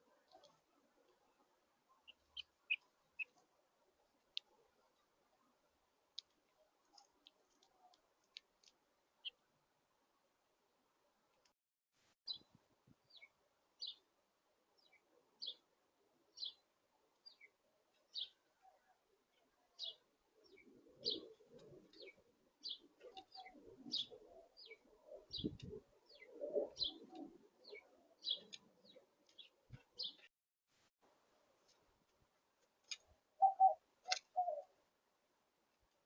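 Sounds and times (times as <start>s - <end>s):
bird chirping: 1.9s - 3.4s, 12.3s - 14.1s, 14.8s - 15.6s, 16.3s - 30.3s, 32.9s - 34.7s
bird cooing: 19.8s - 29.0s, 33.4s - 34.7s.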